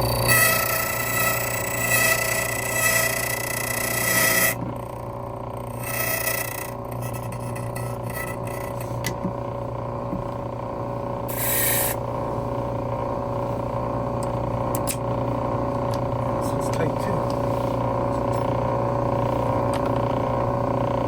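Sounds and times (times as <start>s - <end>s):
cutter grinding key blank: 0.0s - 9.4s, 11.3s - 12.0s
key cutting machine humming: 0.0s - 21.0s.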